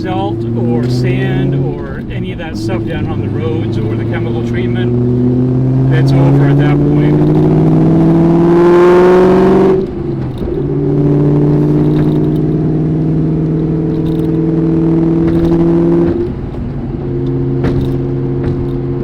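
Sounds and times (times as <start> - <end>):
car engine exhaust note: 0.0 - 19.0.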